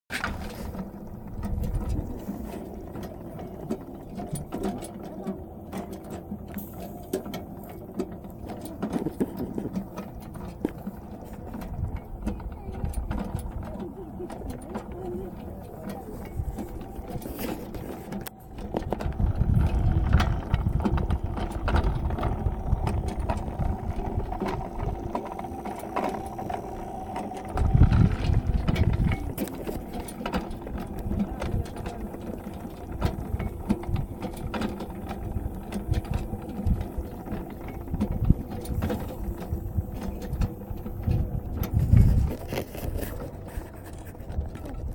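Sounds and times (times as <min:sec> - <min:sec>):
gears ticking: 0:00.8 - 0:44.9
low rumbles: 0:07.4 - 0:42.5
small motor whining: 0:07.7 - 0:44.4.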